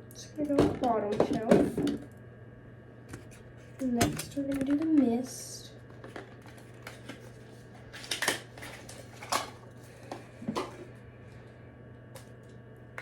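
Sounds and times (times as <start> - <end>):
packaging rustling and clicks: 5.9 - 9.6.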